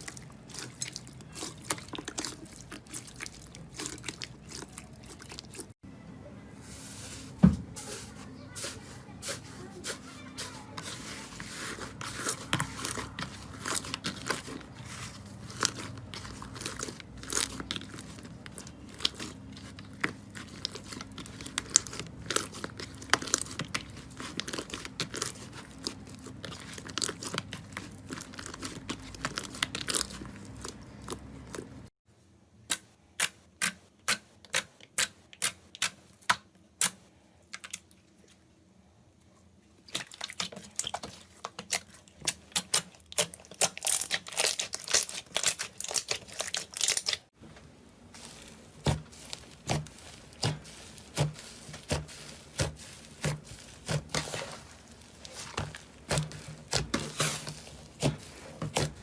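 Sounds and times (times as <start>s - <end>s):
slime crackling and popping: 41.6s - 47.4s, 48.2s - 59.0s.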